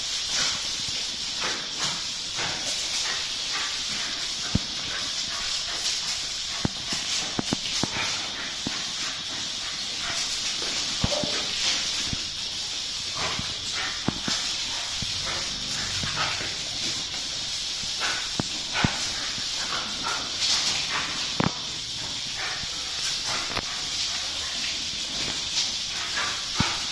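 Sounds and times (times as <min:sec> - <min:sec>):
garden hose spraying: 0:00.0 - 0:26.9
dogs snapping at water: 0:10.0 - 0:12.3.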